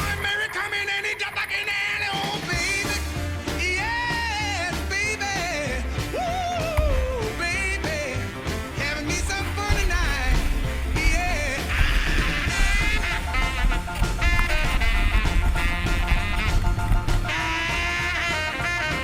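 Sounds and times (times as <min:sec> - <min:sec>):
rock song with vocals: 0:00.0 - 0:19.0.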